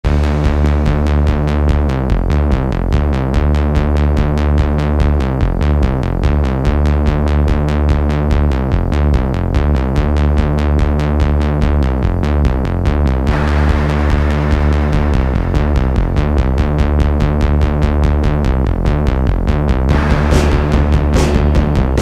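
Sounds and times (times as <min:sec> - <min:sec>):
synthesizer line with bass: 0:00.0 - 0:22.0
drum machine beat: 0:13.3 - 0:19.1, 0:19.9 - 0:22.0.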